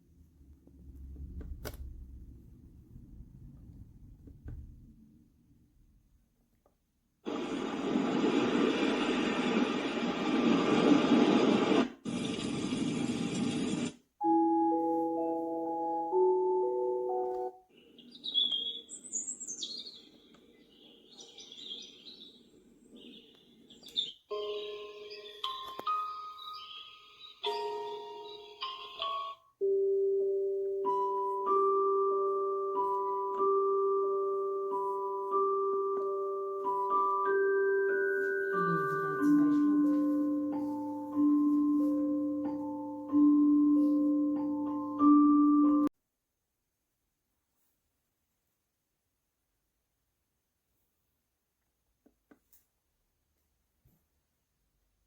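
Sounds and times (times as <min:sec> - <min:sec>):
chime-like mallet melody: 0:14.3 - 0:17.5, 0:24.3 - 0:45.9
birds chirping and trilling: 0:17.7 - 0:29.4.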